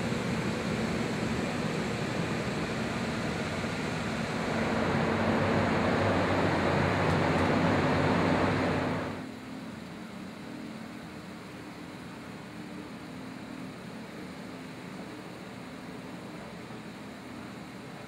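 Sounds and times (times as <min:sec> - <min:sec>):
drying equipment whirring: 0:00.0 - 0:09.2.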